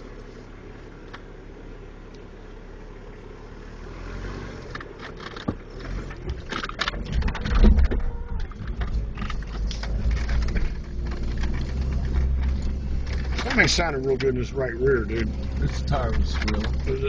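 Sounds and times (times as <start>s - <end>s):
off-road vehicle engine: 0.0s - 17.0s
knocks and rattles: 4.8s - 17.0s.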